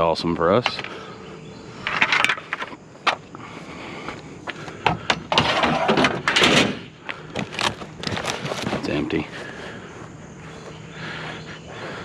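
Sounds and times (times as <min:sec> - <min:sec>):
glass door scraping rattle: 0:05.4 - 0:06.8.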